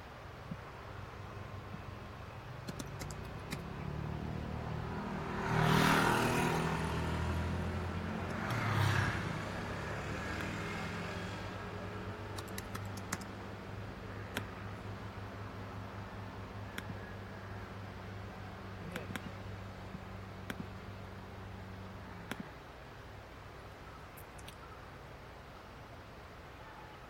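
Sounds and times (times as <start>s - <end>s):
sharp clicks: 2.6s - 3.8s, 8.2s - 8.7s, 12.3s - 13.4s, 14.3s - 14.6s, 16.7s - 17.0s, 22.3s - 22.5s, 24.2s - 24.6s
vehicle passing: 2.6s - 20.4s.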